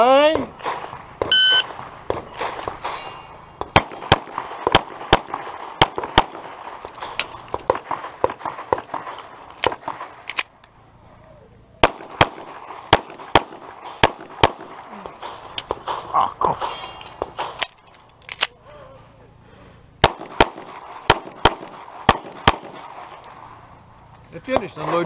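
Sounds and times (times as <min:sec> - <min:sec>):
pistol firing rapid shots: 0:03.7 - 0:07.1, 0:07.7 - 0:10.2, 0:11.8 - 0:16.1, 0:20.0 - 0:23.2.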